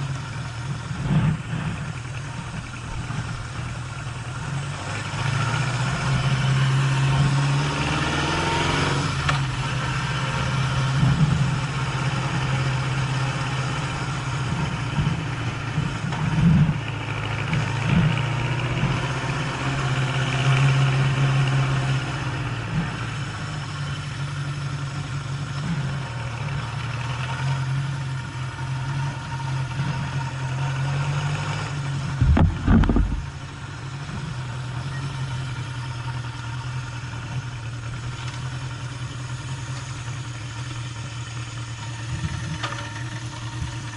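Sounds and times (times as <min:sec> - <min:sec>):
motorcycle engine running: 0:00.0 - 0:43.9
loud low rumble: 0:31.9 - 0:34.3.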